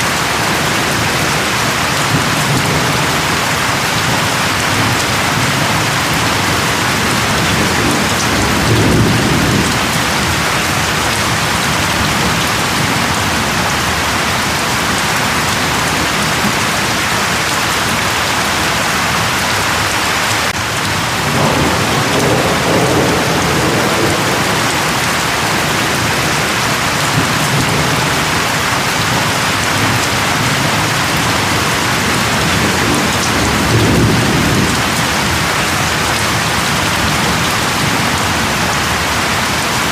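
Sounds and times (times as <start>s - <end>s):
thunder rumbling: 0.0s - 19.9s, 20.5s - 39.9s
heavy rain falling: 0.0s - 39.9s.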